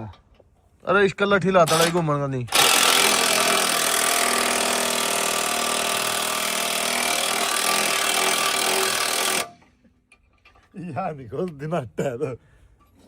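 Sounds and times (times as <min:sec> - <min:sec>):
power tool whining: 0:01.7 - 0:09.6.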